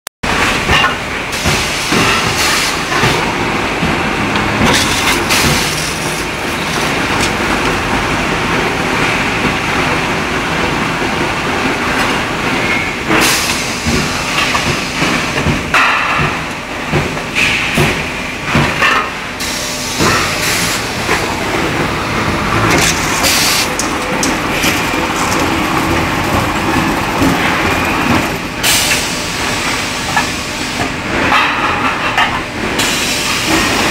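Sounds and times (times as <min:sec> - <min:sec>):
sheet metal machine running: 0:00.3 - 0:33.9
sharp metallic clicks and knocks: 0:22.5 - 0:29.0.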